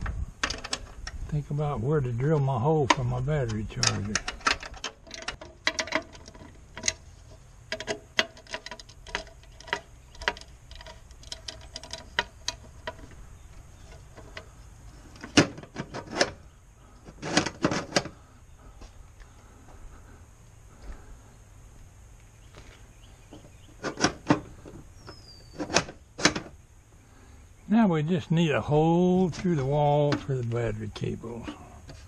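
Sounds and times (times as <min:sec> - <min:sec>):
hand tools clicking on bolts: 0:02.4 - 0:07.0, 0:07.7 - 0:13.2.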